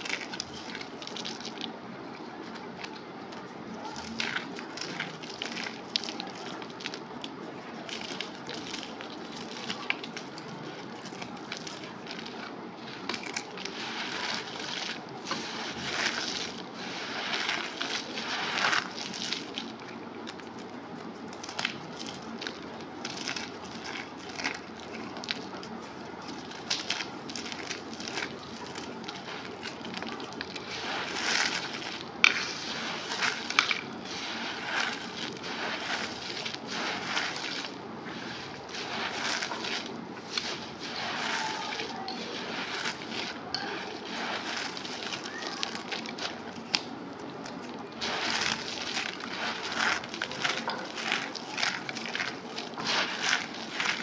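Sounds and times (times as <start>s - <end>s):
crunchy snacks crushed by hand: 21.3s - 54.0s.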